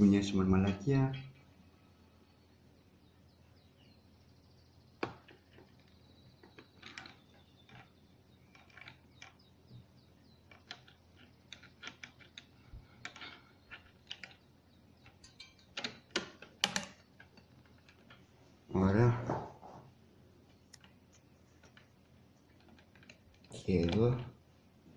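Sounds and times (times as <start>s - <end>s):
clicks and taps of metal and plastic parts: 15.0s - 18.2s.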